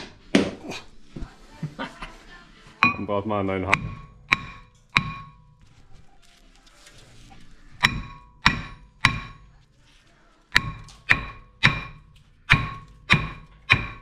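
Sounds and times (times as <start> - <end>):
hammer ringing on steel disc: 2.8 - 5.6, 7.8 - 9.6, 10.6 - 14.0.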